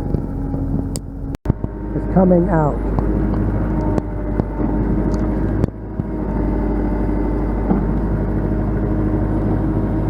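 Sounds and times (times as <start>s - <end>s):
heavy machine engine under load: 0.0s - 10.0s
sharp knocks: 7.6s - 8.1s.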